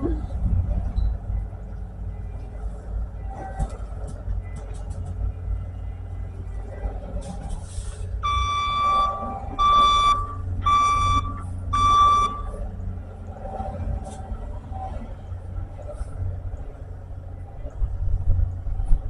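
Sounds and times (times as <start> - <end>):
diesel engine rumble: 0.0 - 19.0
reverse alarm beeps: 8.2 - 12.6.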